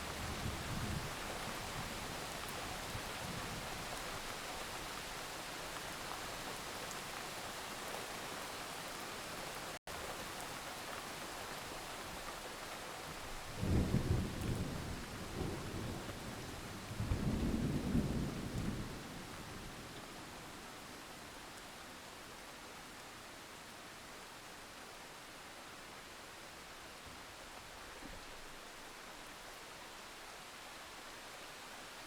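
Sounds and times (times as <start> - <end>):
rain hiss: 0.0 - 32.0.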